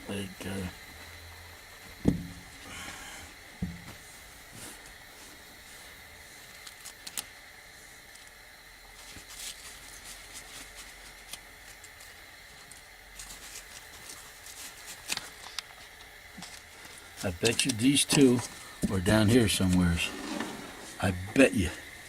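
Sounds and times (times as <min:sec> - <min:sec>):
hands handling hoses and connectors: 0:09.0 - 0:19.0.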